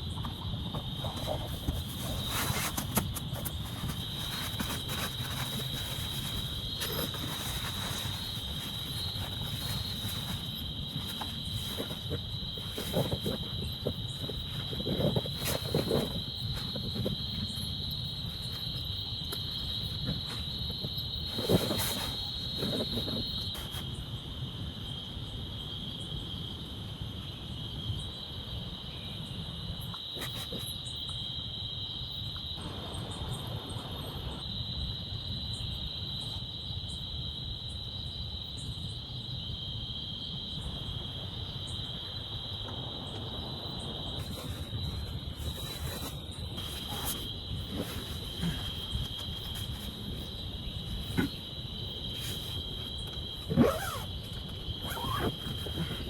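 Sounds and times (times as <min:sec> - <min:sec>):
crickets chirring: 0:00.0 - 0:56.0.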